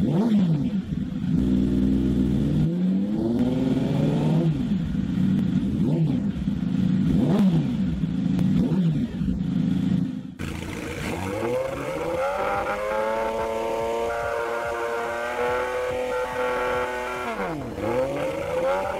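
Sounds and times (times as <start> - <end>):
motorcycle engine revving: 0.0 - 18.9
motorcycle engine high-pitched note: 10.4 - 18.9.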